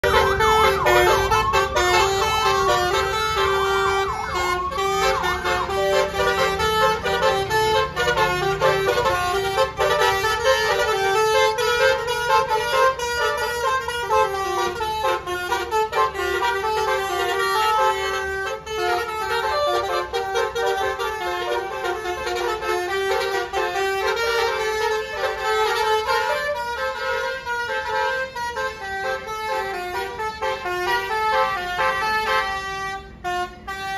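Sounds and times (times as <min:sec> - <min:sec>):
wailing siren-like sweep: 0:00.0 - 0:07.7
multi-tone bus horn melody: 0:00.0 - 0:33.9.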